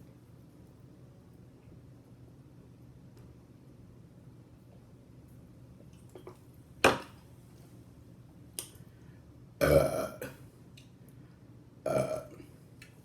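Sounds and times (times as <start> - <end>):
woman burping: 9.6 - 10.3, 11.9 - 12.4.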